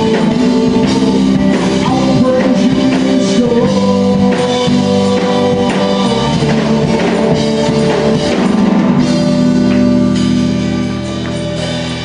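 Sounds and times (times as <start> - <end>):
band playing held chords: 0.0 - 12.0
drum kit: 0.0 - 12.0.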